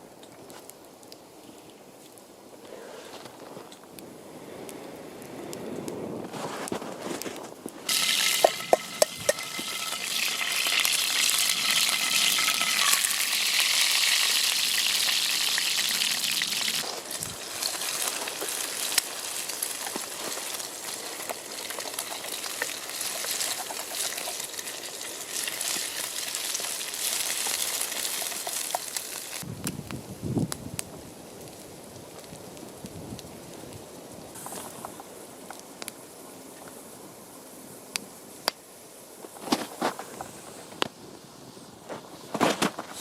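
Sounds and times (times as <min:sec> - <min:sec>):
food sizzling in a pan: 0:07.9 - 0:29.5.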